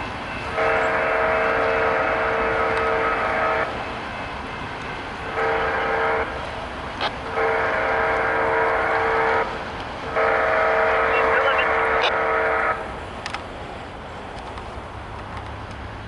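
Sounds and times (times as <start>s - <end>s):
locomotive air horn blasts: 0.5s - 3.7s, 5.2s - 6.4s, 7.2s - 12.9s.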